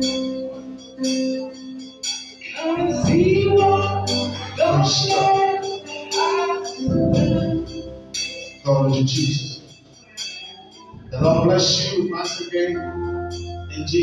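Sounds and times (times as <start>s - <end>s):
worship music with steady beat: 0.0s - 14.0s
person singing: 2.4s - 9.3s.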